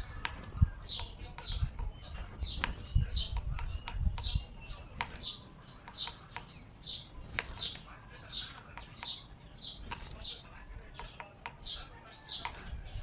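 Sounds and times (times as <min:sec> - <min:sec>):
bird beak tapping on mirror: 0:00.0 - 0:13.0
small bird chirping: 0:00.0 - 0:13.0.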